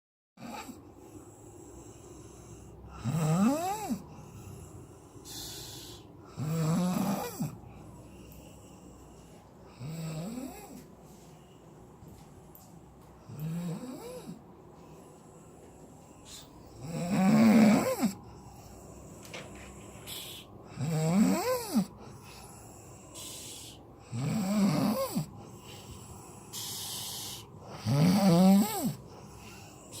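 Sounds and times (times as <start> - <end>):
person snoring: 0.4 - 10.8, 13.2 - 30.0
hissing breaths: 0.8 - 30.0
breathy exhale: 4.0 - 6.2, 14.2 - 16.8, 18.1 - 20.8, 21.9 - 24.1, 25.2 - 27.8, 28.8 - 30.0.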